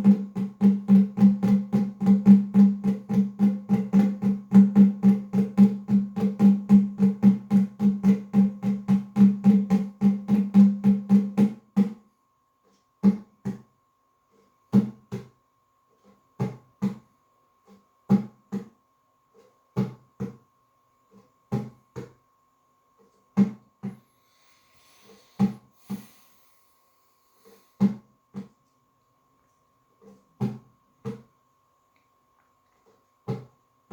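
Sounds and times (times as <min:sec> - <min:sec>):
hand drums: 0:00.0 - 0:12.1, 0:13.0 - 0:13.7, 0:14.7 - 0:15.4, 0:16.0 - 0:18.8, 0:21.1 - 0:22.2, 0:23.4 - 0:24.1, 0:24.7 - 0:26.4.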